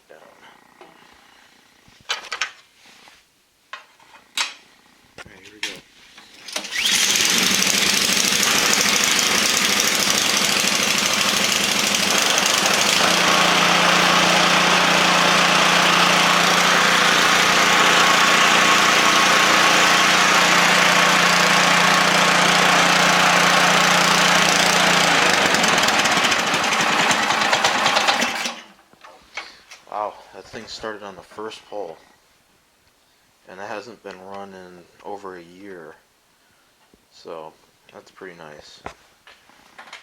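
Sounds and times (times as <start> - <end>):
pull starter: 6.2 - 28.8
snowblower engine running: 6.3 - 28.8.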